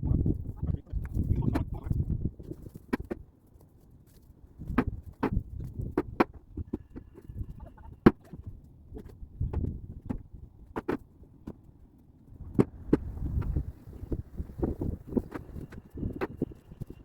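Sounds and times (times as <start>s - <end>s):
low rumbling handling noise: 12.4s - 17.0s.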